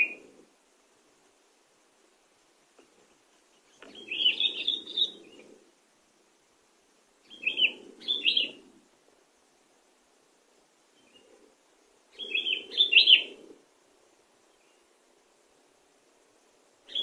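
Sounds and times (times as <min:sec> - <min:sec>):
bird whistling: 0:03.9 - 0:05.2, 0:07.3 - 0:08.6, 0:12.2 - 0:13.3.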